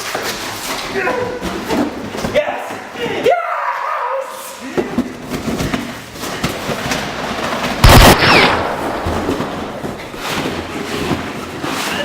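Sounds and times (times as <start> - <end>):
loud explosion-like blast: 7.8 - 10.3
falling whine: 7.8 - 10.4.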